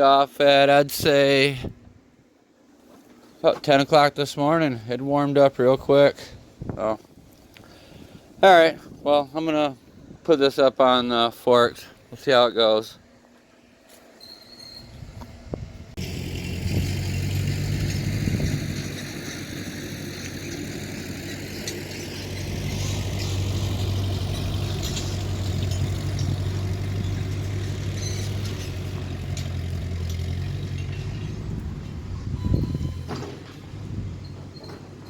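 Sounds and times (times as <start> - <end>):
tractor engine droning: 14.3 - 35.0
light metal clanks: 20.2 - 35.0.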